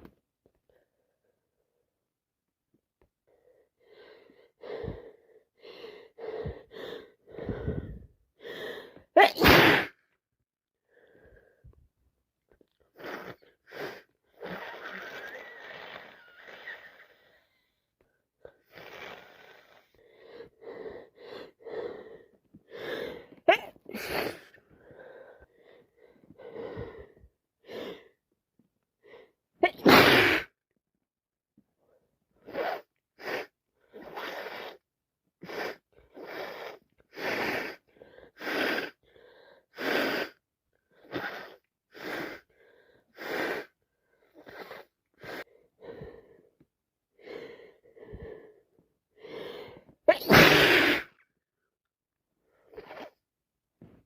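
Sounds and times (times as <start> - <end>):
person sneezing: 9.2 - 10.0, 23.5 - 24.5, 29.6 - 30.5, 50.1 - 51.2.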